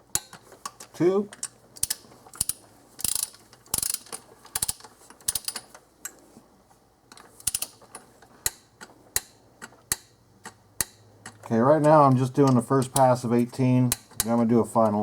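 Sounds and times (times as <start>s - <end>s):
ratchet wrench clicking: 1.8s - 5.6s, 7.4s - 7.8s.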